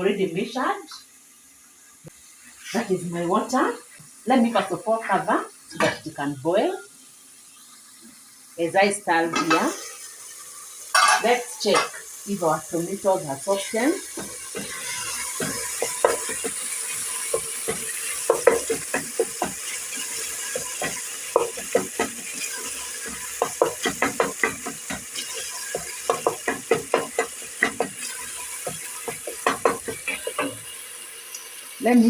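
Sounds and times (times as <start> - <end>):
food sizzling: 0.0 - 32.0
spoon knocking and scraping pot: 10.9 - 12.0, 13.9 - 30.7.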